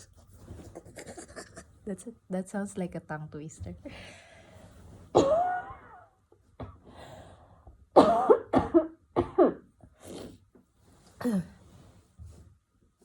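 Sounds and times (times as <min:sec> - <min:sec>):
person coughing: 0:05.2 - 0:06.0, 0:08.0 - 0:09.6.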